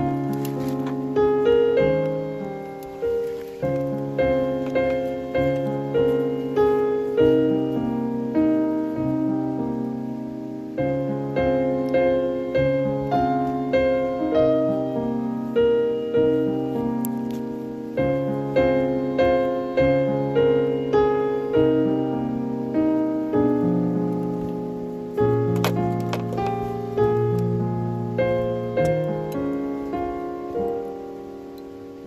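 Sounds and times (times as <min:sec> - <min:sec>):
slow gentle solo piano: 0:00.0 - 0:32.0.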